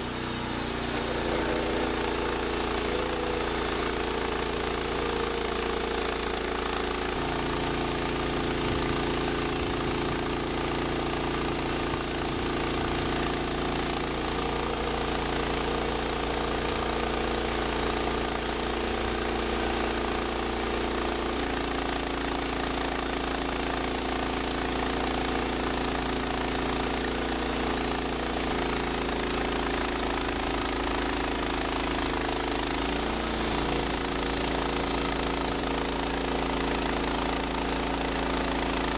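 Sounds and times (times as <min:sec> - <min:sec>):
bandsaw mill cutting log: 0:00.0 - 0:38.9.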